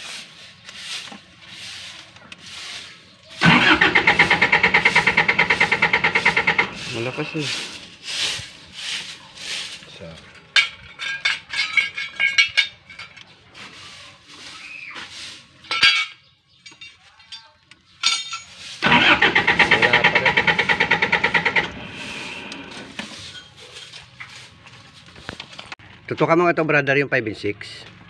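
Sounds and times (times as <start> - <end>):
engine starter cranking: 3.4 - 7.5, 18.8 - 23.1.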